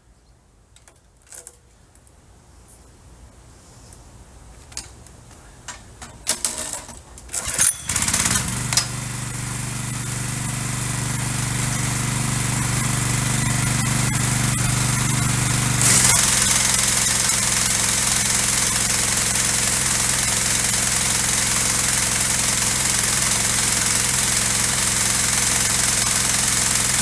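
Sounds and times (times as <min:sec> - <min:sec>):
small gasoline engine running: 0:07.4 - 0:27.0.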